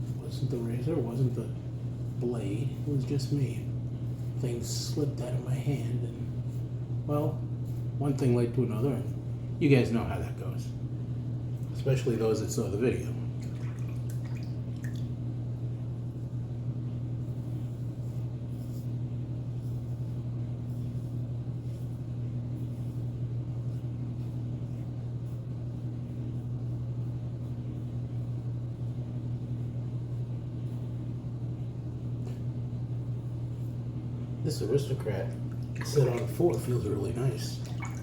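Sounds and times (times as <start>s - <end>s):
laundry machine humming: 0.0s - 17.0s, 31.2s - 38.0s.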